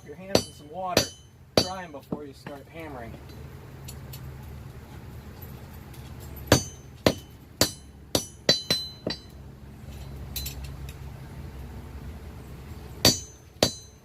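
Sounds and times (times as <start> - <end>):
hammer striking hot steel on anvil: 0.0 - 2.6, 6.5 - 9.4, 13.0 - 14.0.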